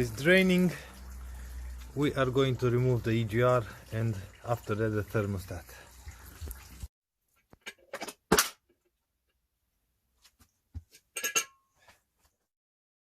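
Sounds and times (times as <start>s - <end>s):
coolant running out: 0.0s - 6.9s.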